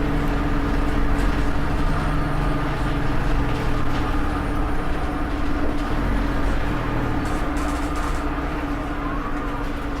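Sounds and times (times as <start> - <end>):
diesel bus engine running: 0.0 - 10.0.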